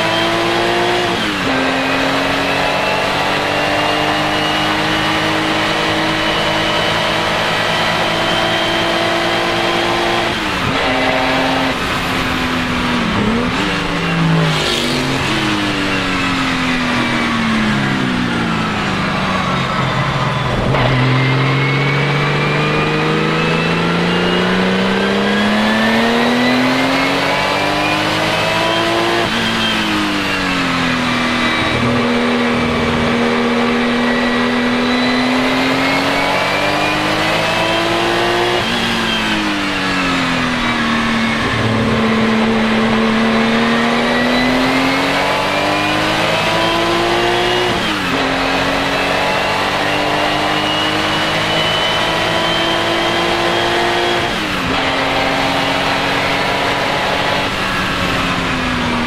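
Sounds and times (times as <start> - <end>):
car engine accelerating hard: 0.0 - 59.0.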